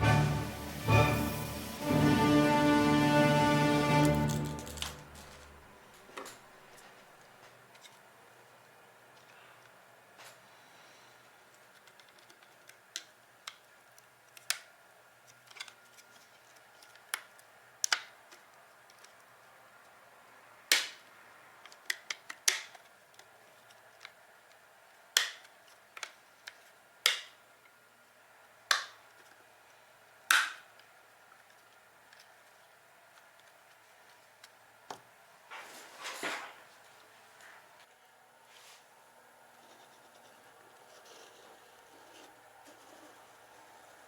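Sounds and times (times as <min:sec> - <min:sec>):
plastic parts clicking together: 0:11.5 - 0:19.3, 0:20.7 - 0:27.4.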